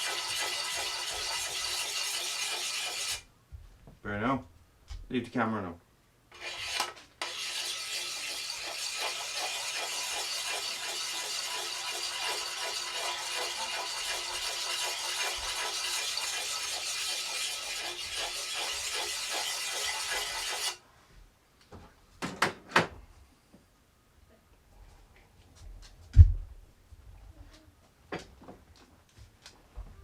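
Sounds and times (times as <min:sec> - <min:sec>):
abrasive rasping on axe edge: 0:06.4 - 0:20.8.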